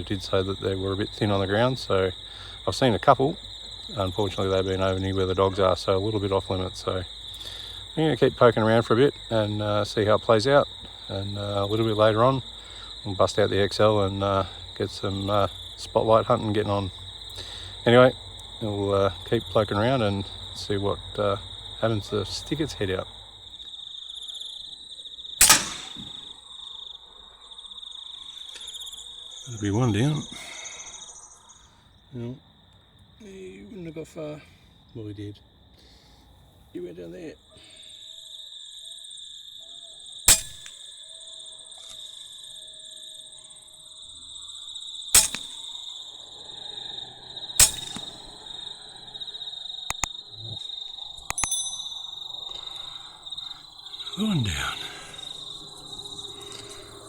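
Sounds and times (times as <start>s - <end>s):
crickets chirring: 0.0s - 57.0s
air rifle shot: 25.4s - 26.3s, 40.3s - 40.7s, 45.2s - 45.7s, 47.6s - 48.4s
faint clicks: 49.8s - 51.6s.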